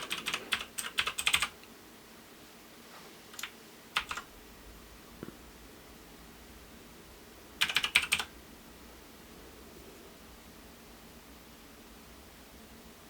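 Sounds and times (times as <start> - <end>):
mechanical keyboard typing: 0.0 - 1.5, 3.4 - 4.3, 7.6 - 8.3.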